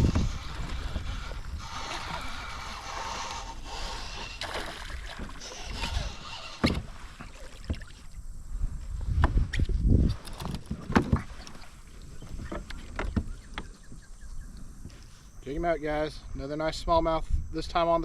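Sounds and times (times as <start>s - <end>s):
knocks and thumps on kayak: 0.0s - 2.4s, 4.4s - 8.1s, 9.1s - 14.1s
rush of water or wind: 0.0s - 9.4s.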